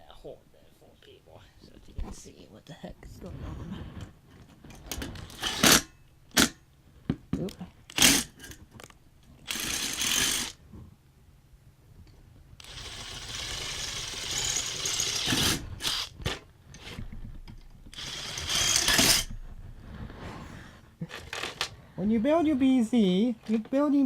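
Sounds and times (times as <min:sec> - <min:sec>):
electric drill boring: 0:05.3 - 0:05.8, 0:09.5 - 0:10.6, 0:12.6 - 0:16.1, 0:17.9 - 0:19.3.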